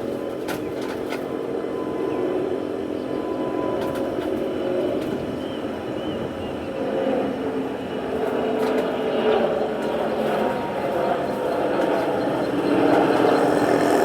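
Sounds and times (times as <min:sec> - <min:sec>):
jet engine roar: 0:00.0 - 0:14.0.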